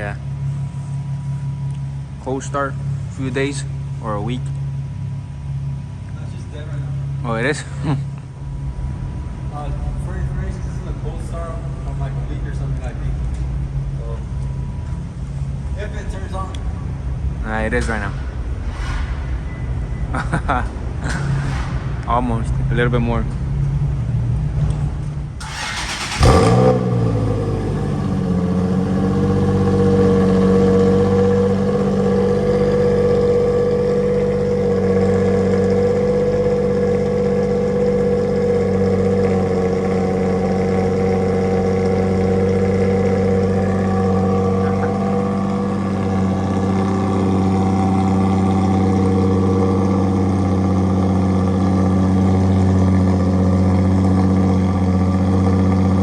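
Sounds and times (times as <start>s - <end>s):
car engine starting and idling: 0.0s - 56.0s.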